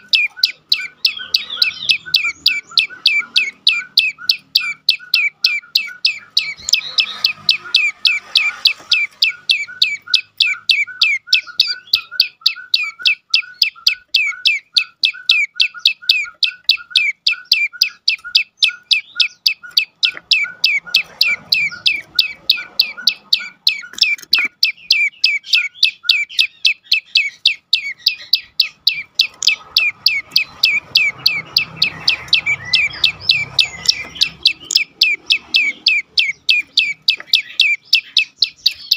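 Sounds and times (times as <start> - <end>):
songbird rattling call: 0.0 - 38.9.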